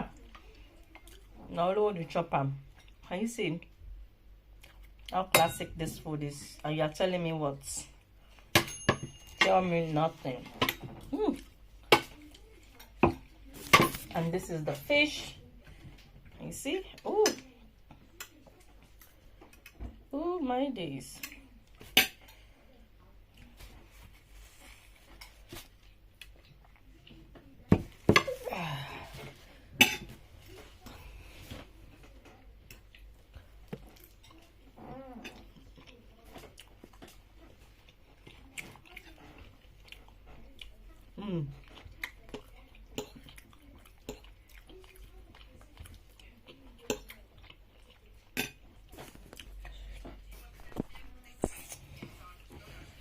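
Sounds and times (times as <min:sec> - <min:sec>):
chewing: 0:00.1 - 0:01.4, 0:04.6 - 0:05.2, 0:23.3 - 0:27.4, 0:30.4 - 0:53.0
cutlery clinking on a plate: 0:08.6 - 0:09.6.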